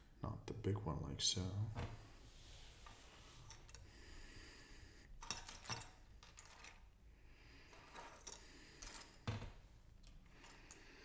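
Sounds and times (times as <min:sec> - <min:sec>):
plastic pieces clicking and clattering: 0:05.2 - 0:06.9.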